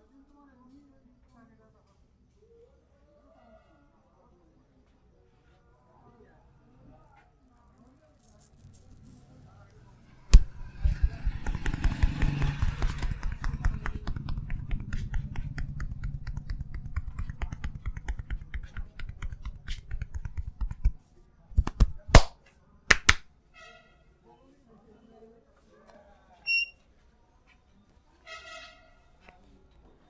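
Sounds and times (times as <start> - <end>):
hands tapping on a head: 10.3 - 21.0, 21.6 - 22.3, 22.9 - 23.3
sharp hand strikes: 10.3 - 21.0, 21.6 - 23.2.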